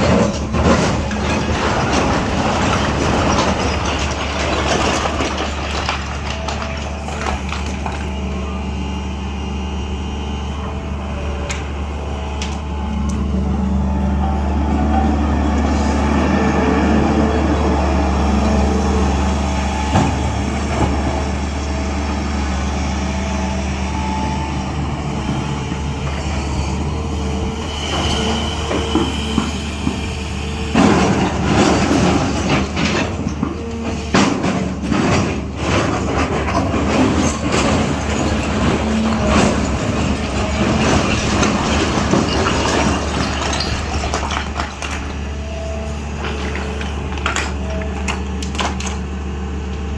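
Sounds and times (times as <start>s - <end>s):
bucket clattering and scraping: 0.0s - 8.2s, 30.8s - 49.0s
excavator diesel engine running: 0.0s - 49.9s.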